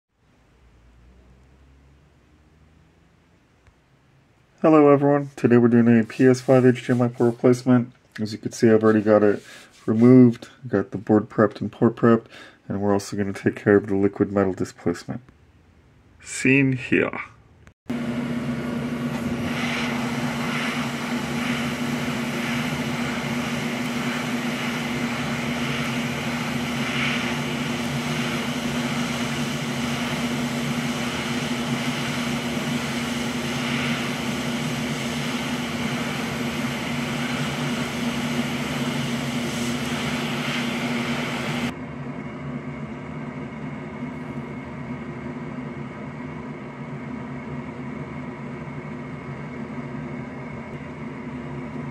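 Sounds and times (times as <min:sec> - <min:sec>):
small electric fan whirring: 0:17.9 - 0:51.9
strong steady hum: 0:17.9 - 0:51.9.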